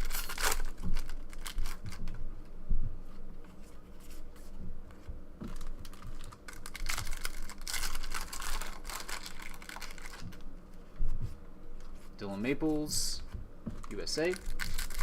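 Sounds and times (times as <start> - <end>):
cards being flipped through: 0.0 - 2.1.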